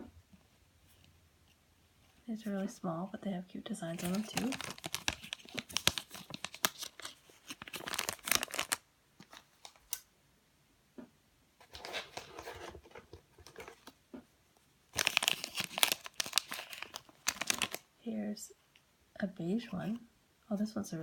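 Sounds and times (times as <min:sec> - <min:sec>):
plastic packaging crinkling and tearing: 0:03.8 - 0:10.0, 0:14.9 - 0:17.9.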